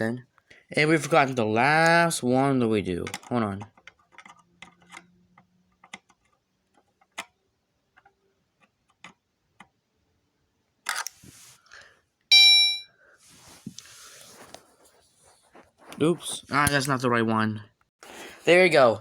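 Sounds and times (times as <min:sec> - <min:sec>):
rustling: 0:13.2 - 0:16.5.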